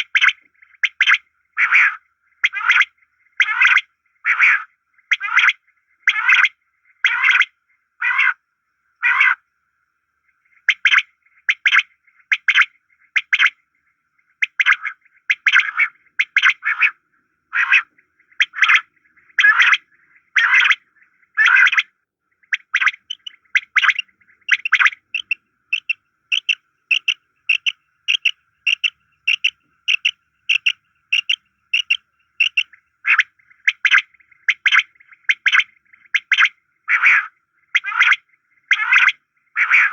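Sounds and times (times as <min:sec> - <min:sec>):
rasping bird calls: 0:00.0 - 0:08.4, 0:14.4 - 0:39.9
thin steady whistle: 0:23.1 - 0:32.7.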